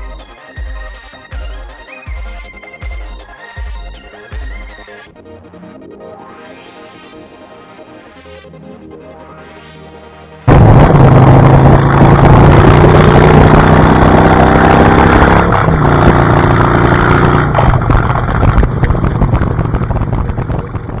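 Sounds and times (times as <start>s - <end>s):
loud engine running: 10.5s - 21.0s.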